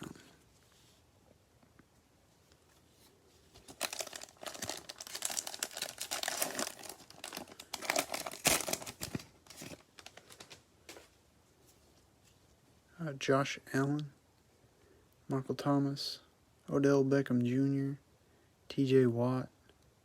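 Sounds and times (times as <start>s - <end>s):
cellophane wrapper crinkling: 3.5s - 10.6s.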